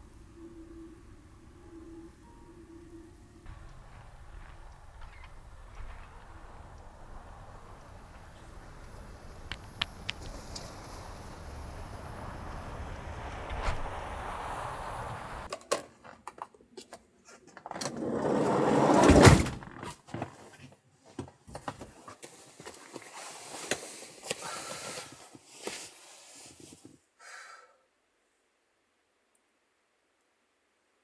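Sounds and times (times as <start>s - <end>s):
rising rush: 0.2s - 15.5s.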